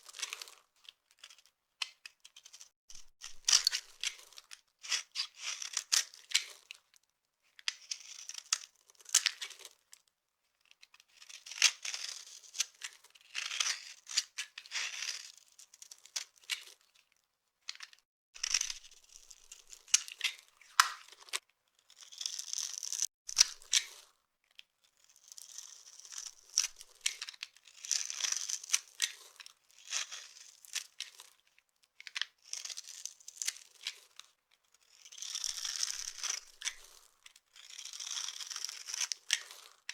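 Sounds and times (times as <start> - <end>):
dry soap crunching: 2.4 - 6.8, 17.8 - 24.1, 25.1 - 31.4, 32.1 - 34.2, 34.8 - 39.9.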